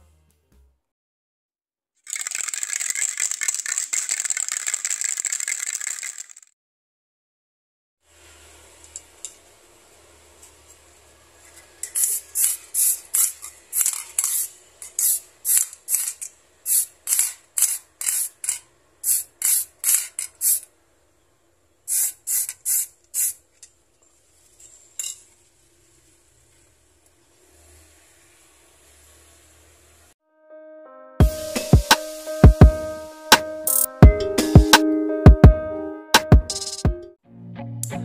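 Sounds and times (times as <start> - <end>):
aerosol spray can bursts: 2.1 - 6.4, 11.8 - 20.7, 21.9 - 23.4.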